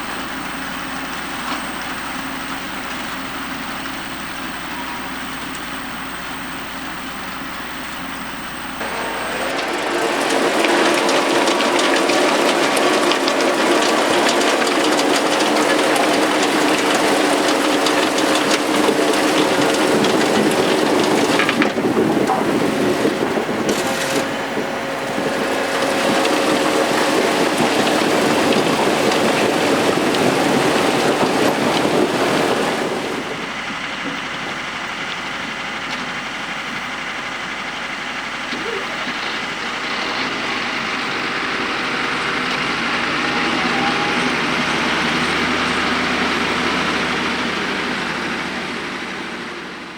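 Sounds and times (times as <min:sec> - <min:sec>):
harvester rushing noise: 0:00.0 - 0:36.3
tractor engine under load: 0:00.0 - 0:49.9.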